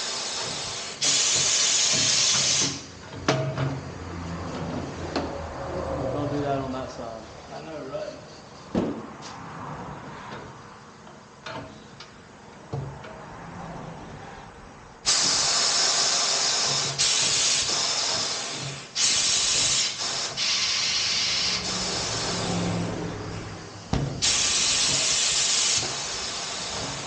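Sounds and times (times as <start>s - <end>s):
compressed air hissing: 0.0s - 2.9s, 15.0s - 27.0s.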